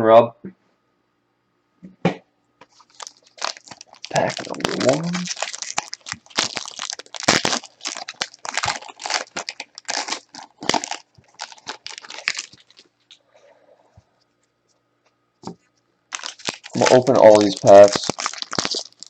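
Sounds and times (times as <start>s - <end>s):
plastic wrapper crinkling and tearing: 2.6s - 13.2s, 15.4s - 19.0s.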